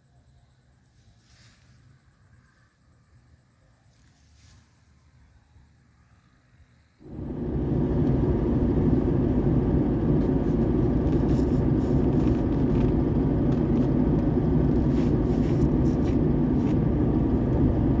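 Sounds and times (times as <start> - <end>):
strong wind buffeting microphone: 7.0 - 18.0.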